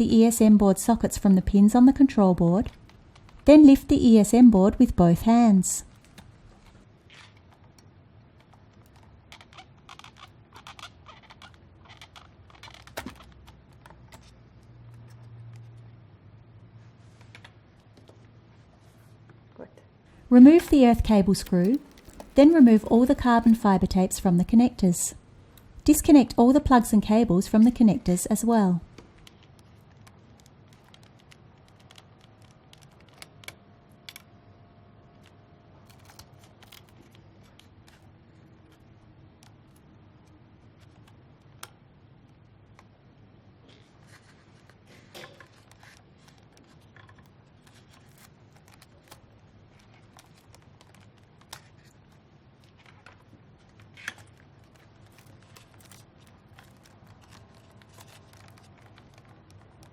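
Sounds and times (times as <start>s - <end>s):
cable plugs clicking and scraping: 20.5s - 23.9s.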